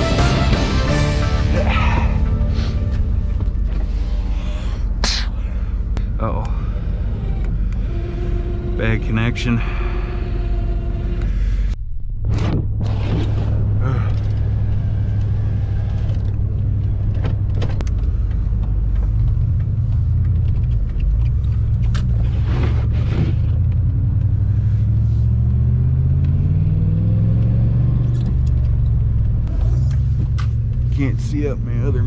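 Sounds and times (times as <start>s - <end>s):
brief rushing sound: 0.0s - 4.2s
road rumble: 0.0s - 32.0s
truck engine accelerating: 0.0s - 32.0s.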